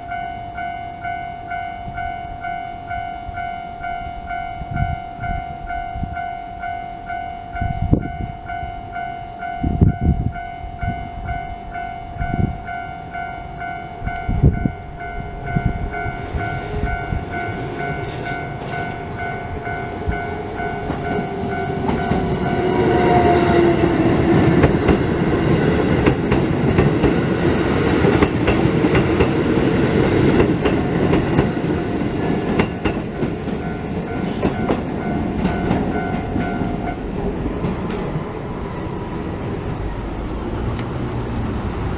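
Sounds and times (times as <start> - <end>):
level-crossing warning bell: 0.0 - 40.3
train wheels clattering on rails: 15.6 - 41.9.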